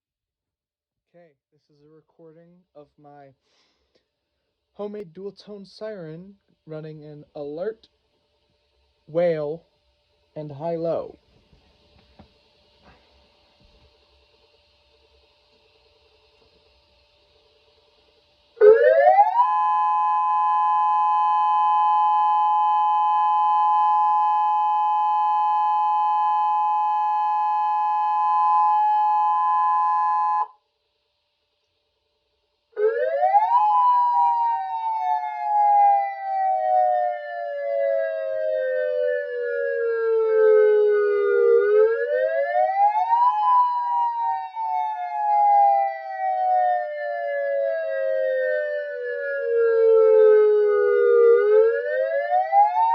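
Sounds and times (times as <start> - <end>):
dual-tone electronic siren: 18.5 - 30.6, 32.7 - 52.9.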